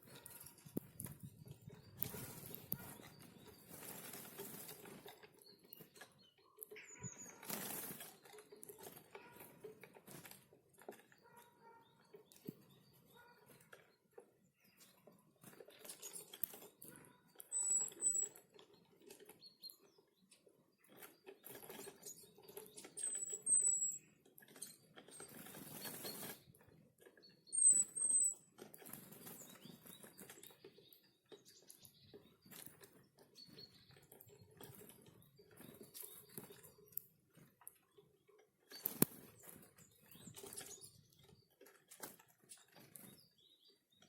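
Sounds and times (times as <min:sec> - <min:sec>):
small taps and scratches: 0:00.0 - 0:44.0
wing flutters: 0:07.2 - 0:09.4, 0:25.1 - 0:26.5
high thin bird chirps: 0:17.4 - 0:18.4, 0:22.8 - 0:26.3, 0:27.4 - 0:28.5.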